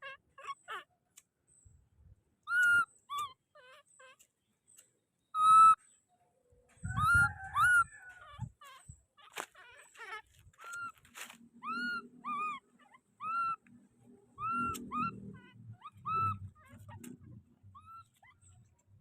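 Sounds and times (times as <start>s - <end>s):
baby monkey crying: 0.0s - 0.9s, 2.5s - 4.3s, 5.4s - 5.8s, 6.9s - 13.7s, 14.4s - 18.8s.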